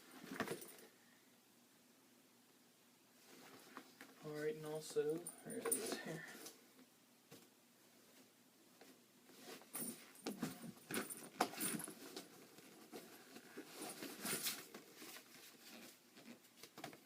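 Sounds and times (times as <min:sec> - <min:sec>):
rustling of packaging: 0:09.4 - 0:17.0.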